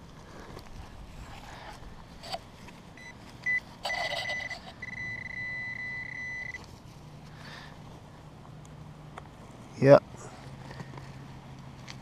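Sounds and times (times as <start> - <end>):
metal detector beeping: 3.0 - 6.6.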